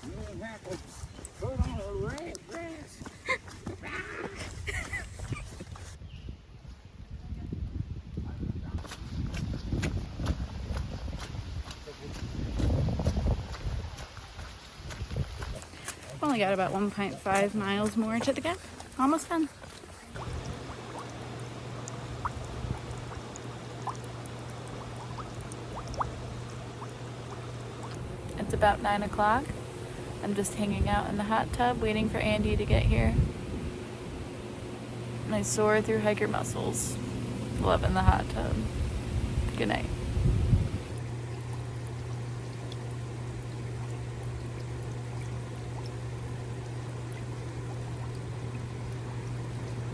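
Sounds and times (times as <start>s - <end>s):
pump humming: 10.2s - 49.9s
water bubbling and gurgling: 19.6s - 31.3s, 40.1s - 49.9s.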